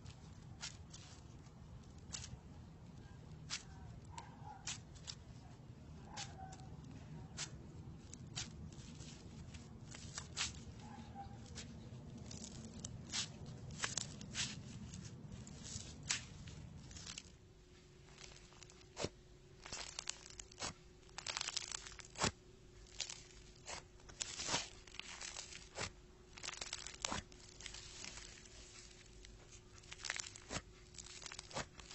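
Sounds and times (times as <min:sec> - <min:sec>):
crunchy slime crackling: 0:00.0 - 0:31.9.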